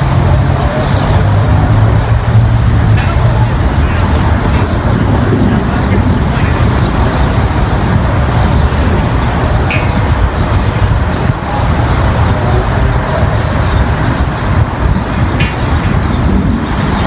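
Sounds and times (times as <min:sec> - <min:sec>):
thunderstorm rushing noise: 0:01.6 - 0:17.0.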